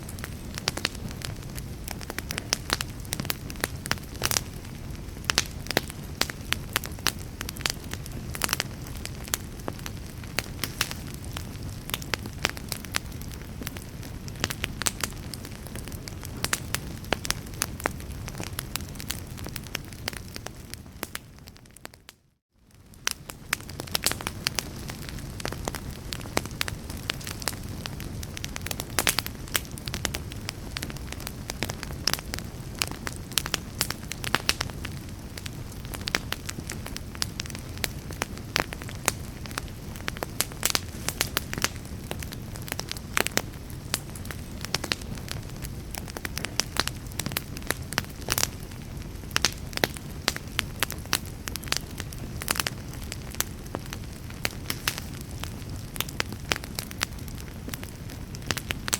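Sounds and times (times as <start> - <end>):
fire flames rushing: 0.0 - 21.9, 22.8 - 58.9
burning logs crackling: 0.0 - 58.9.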